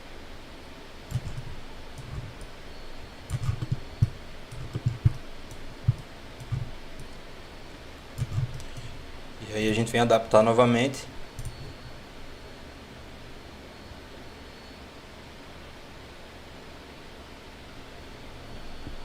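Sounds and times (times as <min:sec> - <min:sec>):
mouse and keyboard clicks: 0:01.1 - 0:02.5, 0:03.3 - 0:07.2, 0:08.2 - 0:09.0, 0:11.4 - 0:11.7.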